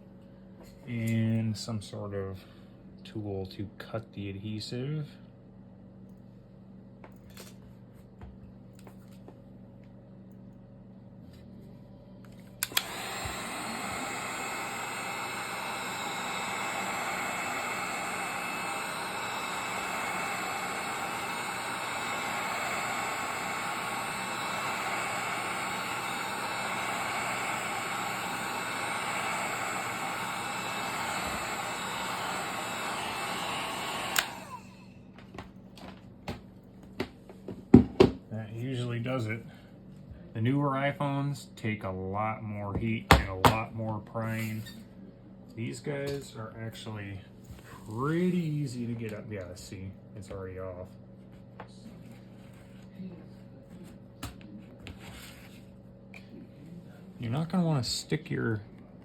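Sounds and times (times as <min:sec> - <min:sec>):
heat gun switch click: 0:12.6 - 0:13.6, 0:34.0 - 0:34.5
hot air gun blowing: 0:12.6 - 0:35.0.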